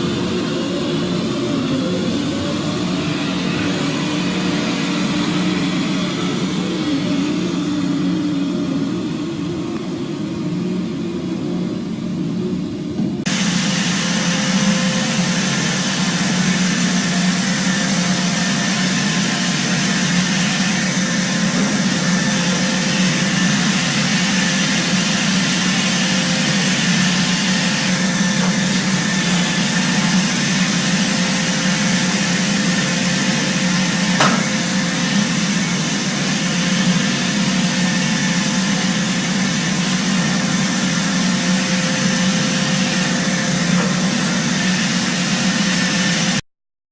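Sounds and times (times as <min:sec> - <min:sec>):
robot vacuum cleaner whirring: 0:00.0 - 0:46.4
sharp click: 0:34.2 - 0:34.5.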